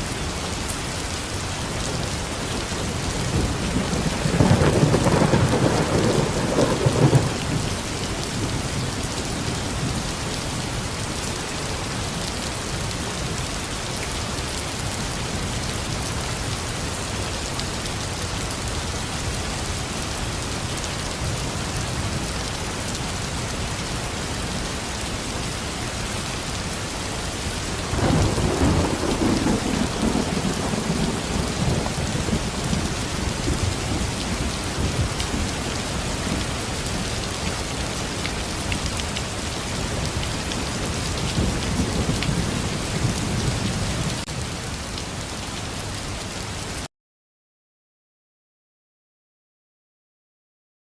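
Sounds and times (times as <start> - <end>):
steady rain falling: 0.0 - 46.9
thunder rumbling: 2.5 - 10.0, 27.8 - 36.9.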